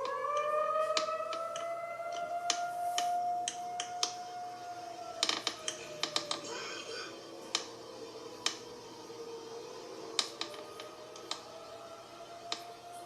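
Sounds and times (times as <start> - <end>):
distant tornado siren wailing: 0.0 - 13.0
sharp clicks: 10.2 - 11.5.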